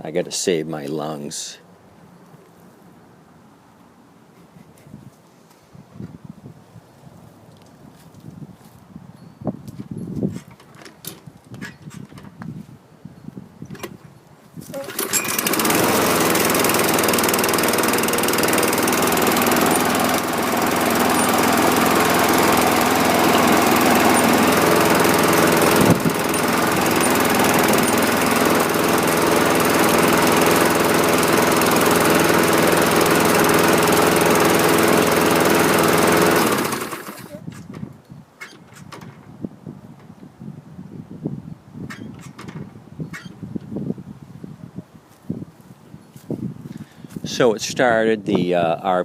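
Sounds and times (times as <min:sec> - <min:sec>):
lawn mower engine running: 0:14.7 - 0:37.5.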